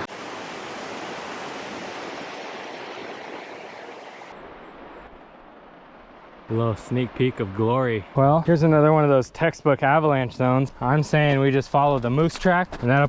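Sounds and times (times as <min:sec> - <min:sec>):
fast-flowing stream rushing: 0:00.0 - 0:08.8.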